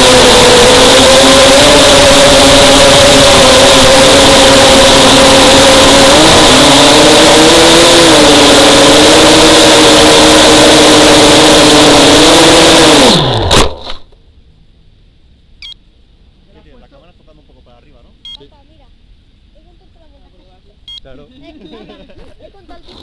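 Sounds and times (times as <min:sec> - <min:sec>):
quadcopter motors buzzing whine: 0:00.0 - 0:14.0.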